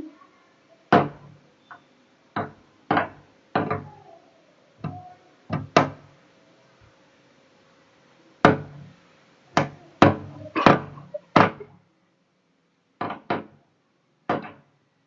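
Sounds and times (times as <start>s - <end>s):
bird striking glass window: 2.4s - 3.9s, 13.0s - 13.6s, 14.3s - 14.6s.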